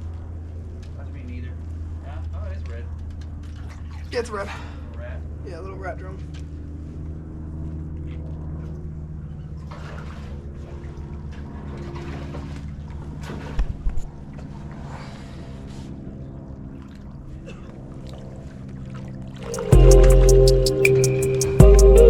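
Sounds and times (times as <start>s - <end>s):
water splashing and trickling: 1.8s - 4.4s, 7.6s - 14.8s, 16.6s - 20.4s.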